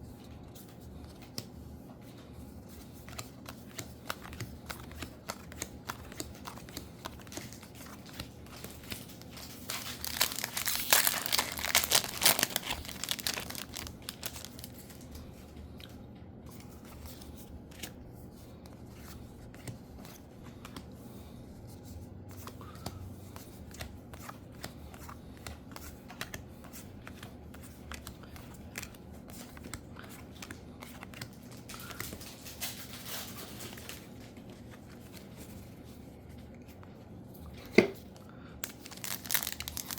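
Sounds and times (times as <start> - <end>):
cards rustling and clicking: 0.2 - 37.0, 37.6 - 39.9
foil pack tearing and crinkling: 7.2 - 15.0, 38.6 - 39.9.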